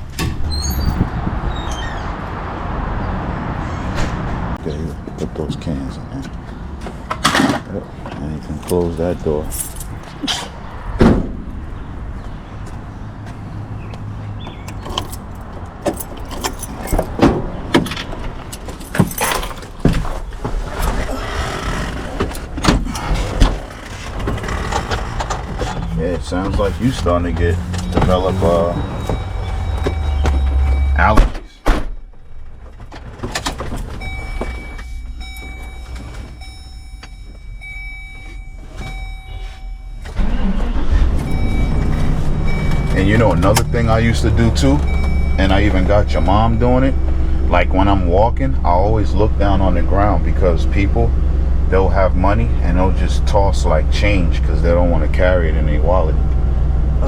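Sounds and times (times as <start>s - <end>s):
car rumbling: 0.0s - 57.0s
metal clinking and rattling: 6.8s - 10.5s, 14.5s - 21.1s
electronic warning chime: 27.8s - 31.2s, 34.0s - 40.1s, 41.2s - 47.0s.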